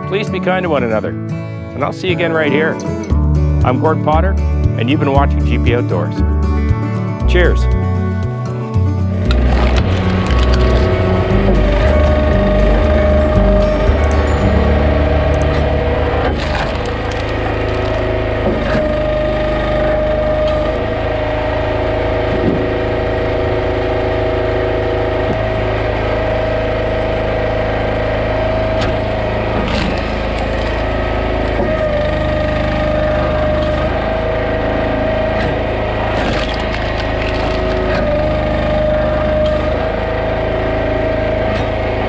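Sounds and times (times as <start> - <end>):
small gasoline engine running: 9.2 - 42.0.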